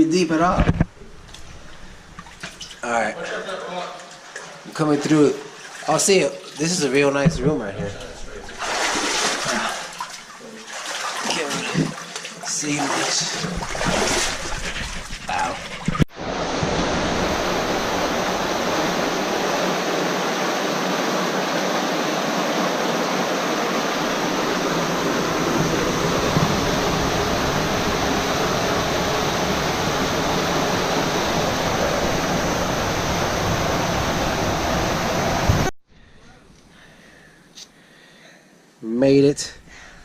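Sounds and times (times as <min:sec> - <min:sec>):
fast-flowing water rushing: 0:08.2 - 0:35.7.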